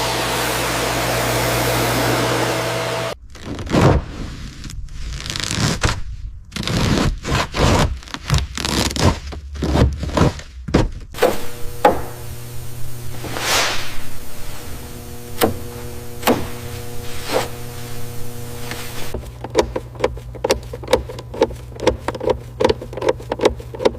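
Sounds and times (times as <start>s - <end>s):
steady machine hum: 0.0s - 3.2s, 11.2s - 21.9s
scraping and rubbing on metal: 11.2s - 23.9s.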